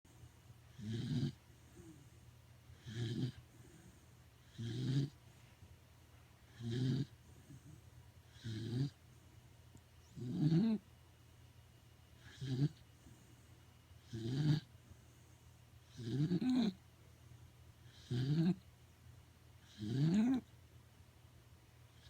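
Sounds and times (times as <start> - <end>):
dog snoring: 0.7 - 5.2, 6.5 - 9.0, 10.0 - 10.8, 12.2 - 13.4, 14.0 - 14.7, 15.8 - 16.8, 17.8 - 18.6, 19.6 - 20.5.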